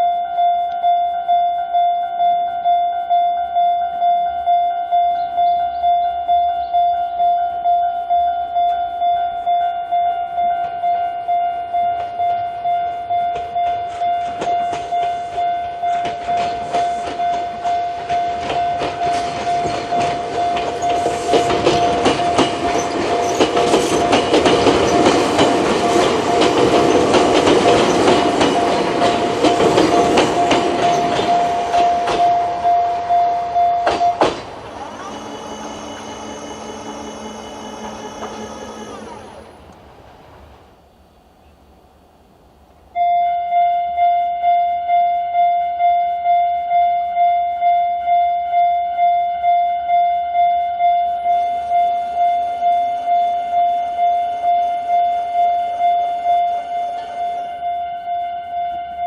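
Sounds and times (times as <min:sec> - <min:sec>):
level crossing warning bell: 0:00.0 - 0:39.7, 0:43.0 - 0:59.0
train wheels clacking over joints: 0:13.2 - 0:39.6.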